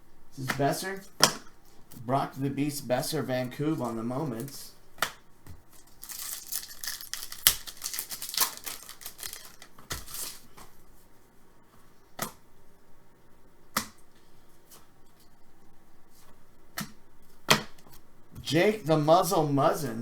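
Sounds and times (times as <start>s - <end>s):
trading cards rustling: 5.8s - 10.8s.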